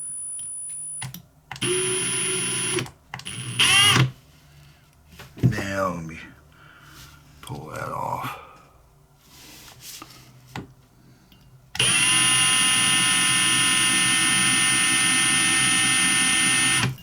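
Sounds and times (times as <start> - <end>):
electric drill whining: 0.0 - 4.1, 11.8 - 17.0.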